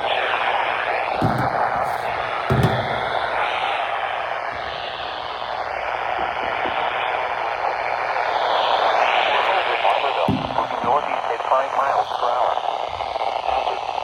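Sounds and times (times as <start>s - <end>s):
radio static hiss: 0.0s - 14.0s
low thump: 1.2s - 3.4s, 10.2s - 11.2s.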